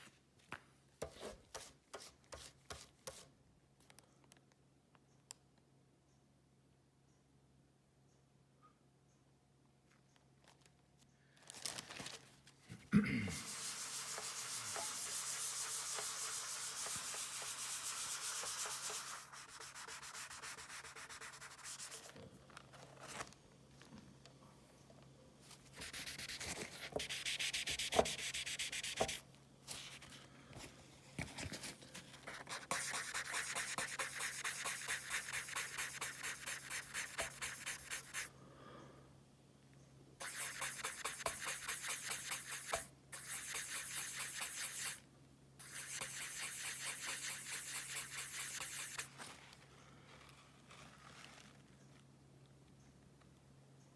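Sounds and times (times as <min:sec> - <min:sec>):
sanding sponge rubbing: 0:13.4 - 0:22.1, 0:25.8 - 0:29.2, 0:32.2 - 0:38.3, 0:40.2 - 0:45.0, 0:45.6 - 0:49.2.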